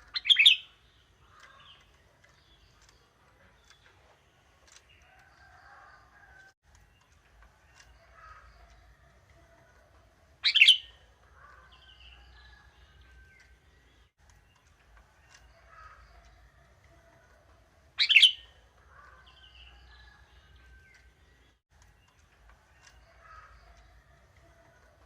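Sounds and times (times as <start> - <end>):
bulbul singing: 0.0 - 5.0, 10.4 - 16.5, 17.9 - 24.8.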